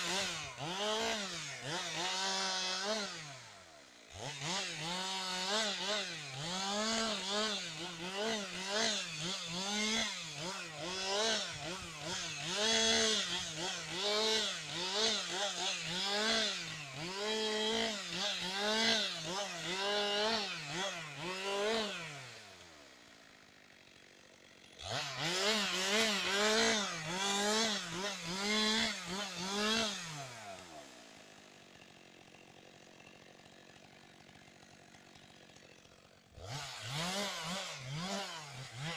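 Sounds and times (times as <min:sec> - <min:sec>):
chainsaw cutting wood: 0:00.0 - 0:38.9.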